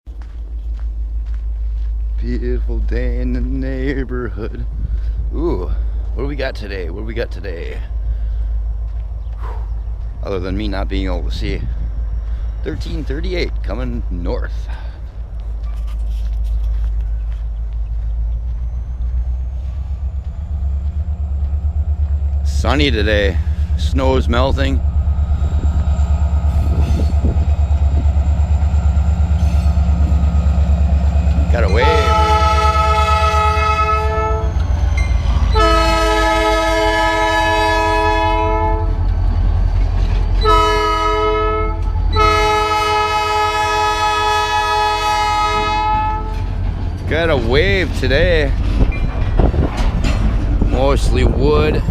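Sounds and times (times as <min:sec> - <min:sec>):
diesel locomotive engine rumbling: 0:00.1 - 0:51.9
locomotive air horn blasts: 0:31.7 - 0:34.6, 0:35.4 - 0:39.0, 0:40.4 - 0:46.5.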